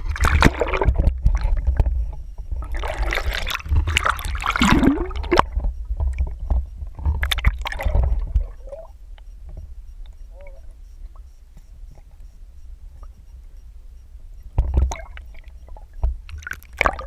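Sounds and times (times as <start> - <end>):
water splashing and gurgling: 0.0 - 9.0, 14.6 - 17.0.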